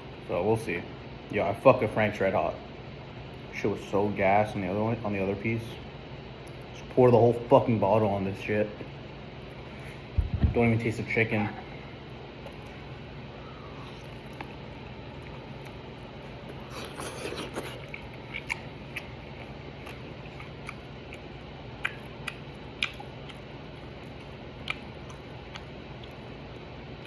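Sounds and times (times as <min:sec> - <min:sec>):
low hum: 0:09.4 - 0:16.9
person chewing: 0:12.4 - 0:27.0.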